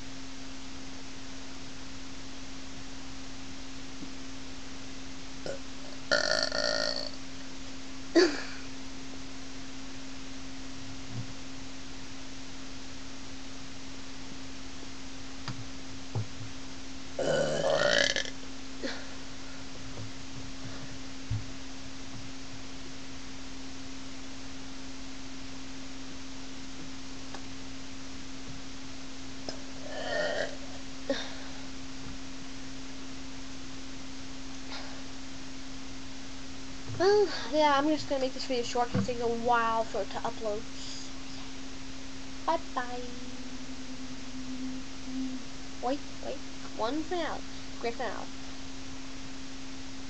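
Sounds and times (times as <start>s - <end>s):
steady low hum: 0.0s - 50.0s
person burping: 5.4s - 7.2s, 8.2s - 8.6s, 17.2s - 19.2s, 29.5s - 31.4s.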